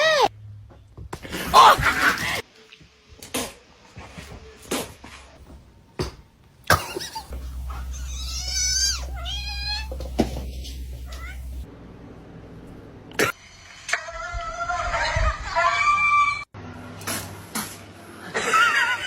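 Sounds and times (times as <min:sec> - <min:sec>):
cat meowing: 0:07.9 - 0:10.4, 0:11.0 - 0:11.6.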